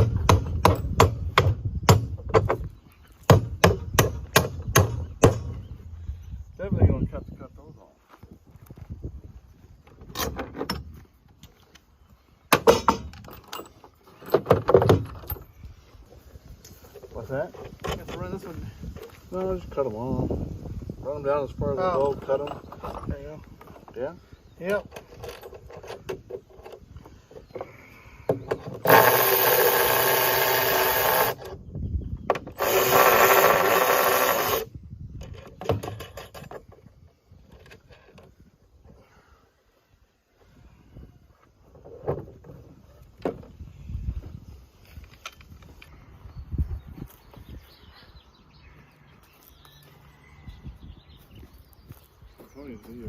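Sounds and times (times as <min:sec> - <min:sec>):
metal hardware clattering: 0:12.6 - 0:15.6
handheld power tool running: 0:28.8 - 0:31.5, 0:32.6 - 0:34.7.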